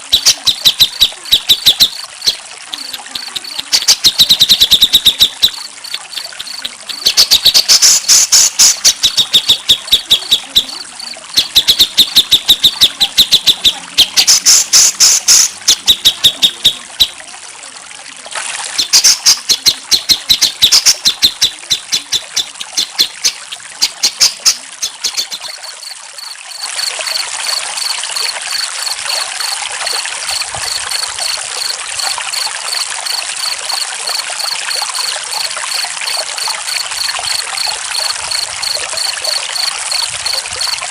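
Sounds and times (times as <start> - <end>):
songbird singing: 0.0 - 17.2, 18.8 - 40.8
running water: 0.0 - 40.9
cricket chirping: 4.4 - 7.2, 25.4 - 40.8.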